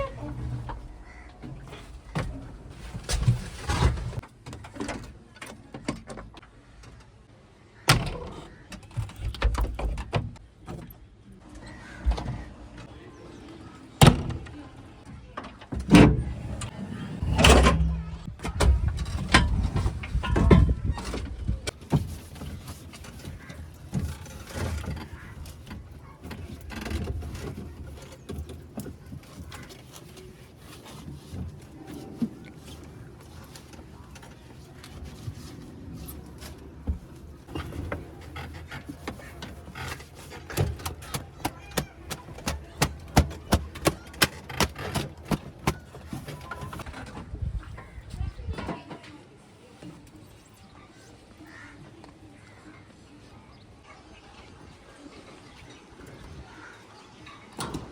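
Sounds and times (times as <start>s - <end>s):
metal clanks and knocks: 36.9s - 46.9s.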